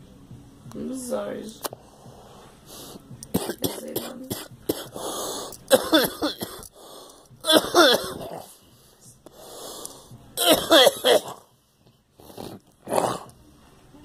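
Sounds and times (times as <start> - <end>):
person coughing: 3.3 - 5.0, 5.7 - 6.7, 7.4 - 8.4, 10.4 - 11.5
rasping breaths: 4.8 - 5.7, 6.6 - 7.4, 8.3 - 10.3.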